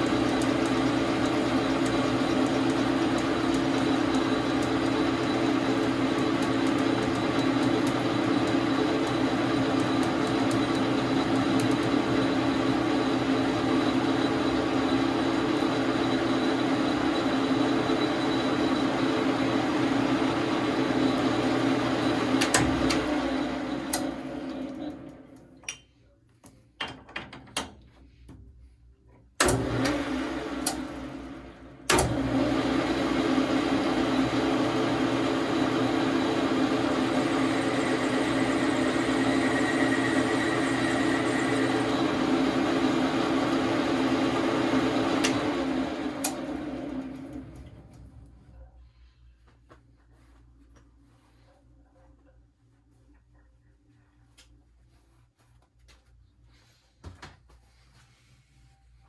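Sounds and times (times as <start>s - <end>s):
lathe running with hum: 0.0s - 25.4s, 29.4s - 48.4s.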